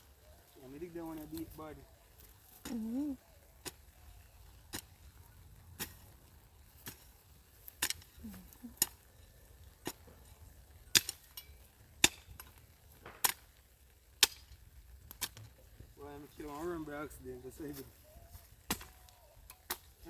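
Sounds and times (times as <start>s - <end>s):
digging tool chopping into soil: 18.7s - 19.9s.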